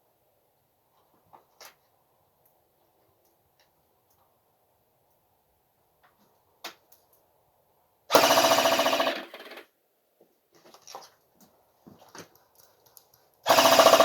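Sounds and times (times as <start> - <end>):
airsoft gun full-auto burst: 8.1 - 9.7, 13.4 - 14.0.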